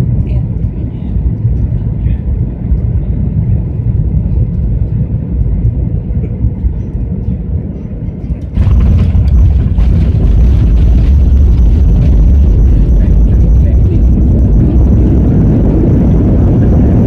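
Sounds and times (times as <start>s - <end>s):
airliner cabin rumble: 0.0s - 17.0s
jet engines reverse thrust: 8.4s - 17.0s.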